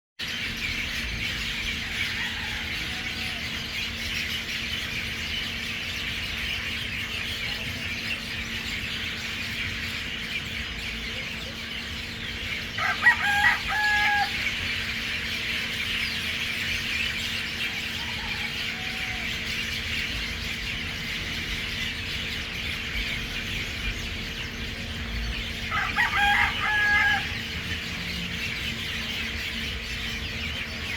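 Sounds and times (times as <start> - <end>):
flock of birds chattering: 0.2 - 30.9
rooster crowing: 1.8 - 3.8, 12.7 - 14.6, 17.6 - 19.6, 25.6 - 27.8.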